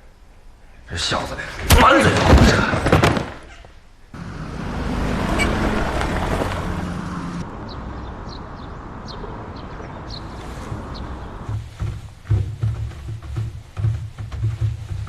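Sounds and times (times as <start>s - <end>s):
vehicle running rushing noise: 4.2s - 12.0s.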